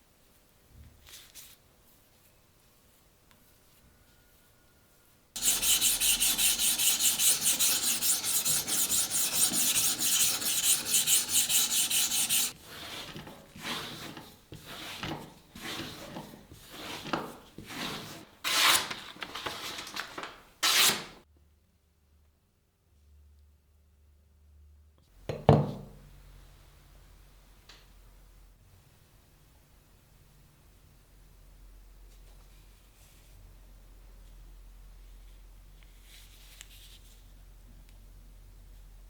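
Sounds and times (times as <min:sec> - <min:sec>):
abrasive rubbing on knife: 0:05.4 - 0:12.6.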